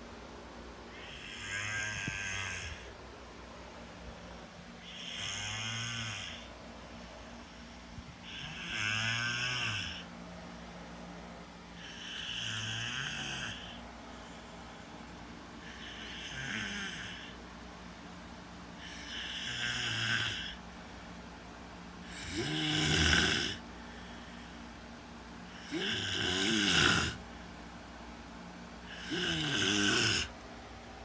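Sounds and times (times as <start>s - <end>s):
person snoring: 0.9s - 2.9s, 4.8s - 6.5s, 7.2s - 10.1s, 11.8s - 13.8s, 15.6s - 17.4s, 18.8s - 20.6s, 22.0s - 24.6s, 25.5s - 27.2s, 28.9s - 30.4s.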